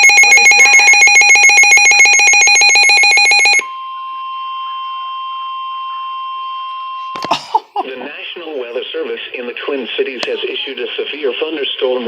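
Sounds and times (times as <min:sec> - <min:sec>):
fast-pulsing electronic alarm: 0:00.0 - 0:07.1
steady single alarm tone: 0:00.0 - 0:07.2.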